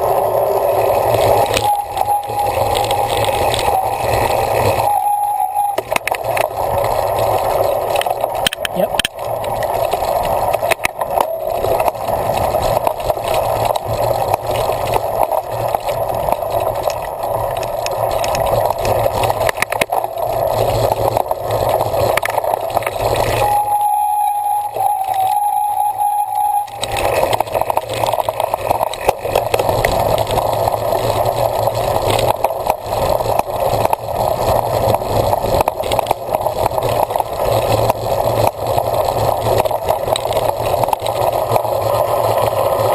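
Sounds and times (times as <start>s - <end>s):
faint steady tone: 0.0s - 9.0s, 22.2s - 29.5s
bicycle tyre noise: 0.0s - 42.9s.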